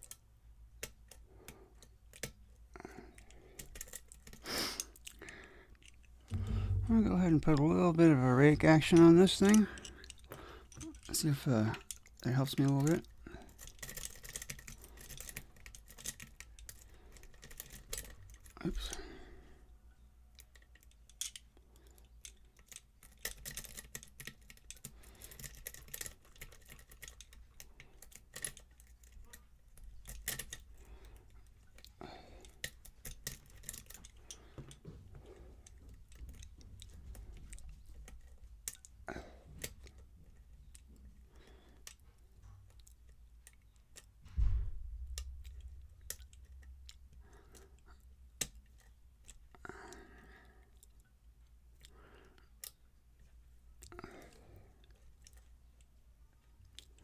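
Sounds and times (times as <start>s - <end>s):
lock picks clicking in lock: 3.1s - 6.5s, 8.6s - 19.0s, 20.3s - 34.8s
dull thump of tools handled: 6.3s - 7.1s, 44.2s - 45.7s.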